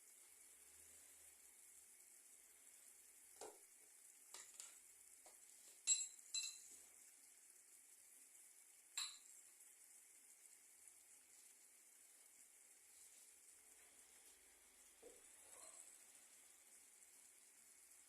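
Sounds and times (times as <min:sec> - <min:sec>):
syrup simmering hiss: 0:00.0 - 0:18.0
metal spoon clinking on pot: 0:05.8 - 0:06.7, 0:09.0 - 0:09.3.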